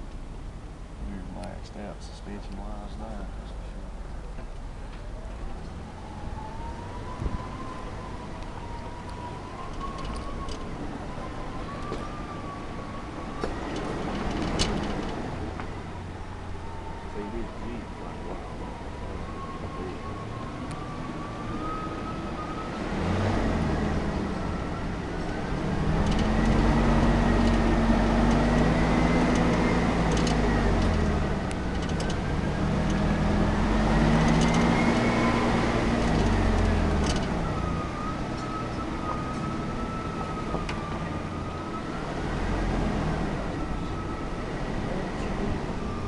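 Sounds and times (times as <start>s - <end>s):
drivetrain whine: 0.0s - 46.0s
off-road engine revving: 22.7s - 40.2s, 41.7s - 46.0s.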